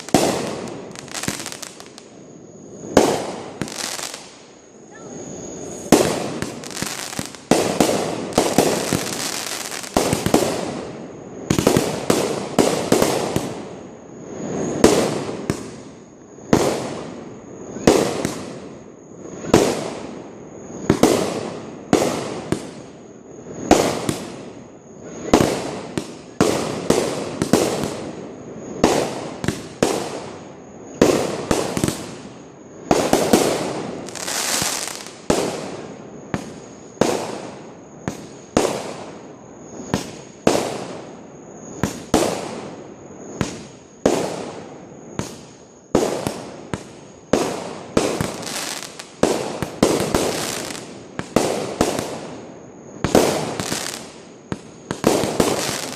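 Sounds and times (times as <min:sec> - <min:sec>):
fireworks banging: 0:00.0 - 0:02.1, 0:02.8 - 0:13.7, 0:53.0 - 0:55.9.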